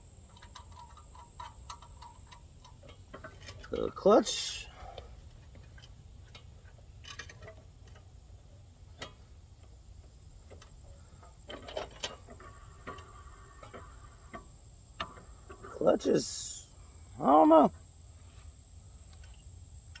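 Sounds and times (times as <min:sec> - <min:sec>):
faint high-pitched whine: 0:00.0 - 0:20.0
hand tools clicking on metal: 0:00.3 - 0:08.1.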